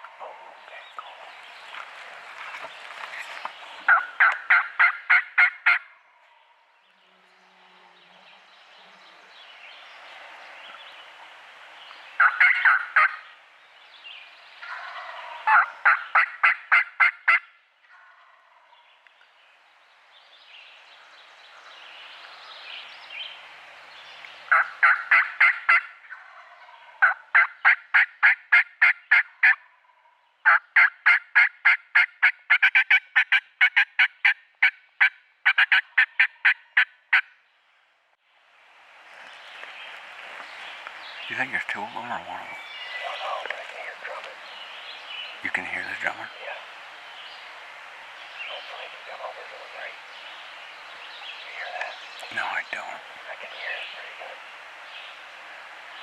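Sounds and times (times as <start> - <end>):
turkey rough calling: 3.8 - 6.0, 12.2 - 13.2, 14.6 - 18.7, 24.5 - 37.3
turkey yelping: 3.9 - 5.9, 12.2 - 13.2, 14.6 - 18.1.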